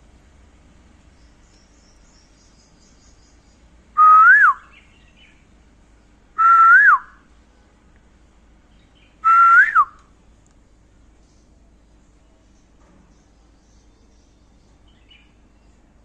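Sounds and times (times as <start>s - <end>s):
small bird high chirps: 1.1s - 3.6s
koel calling whistled notes: 4.0s - 4.7s, 6.4s - 7.1s, 9.2s - 10.0s.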